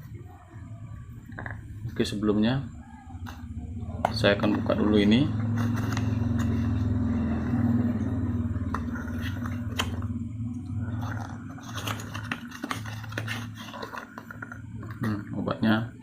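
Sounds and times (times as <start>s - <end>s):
steady low hum: 0.0s - 16.0s
medicine packaging clicks and rustles: 10.9s - 15.2s.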